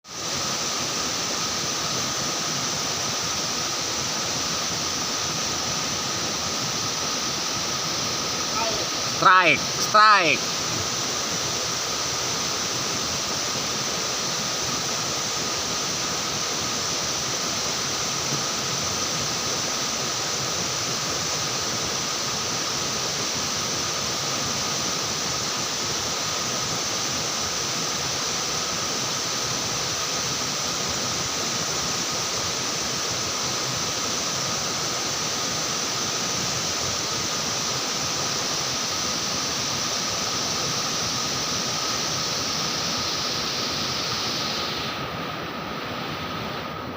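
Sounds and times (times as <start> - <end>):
high hiss: 0.0 - 46.9
river water rushing: 0.1 - 46.9.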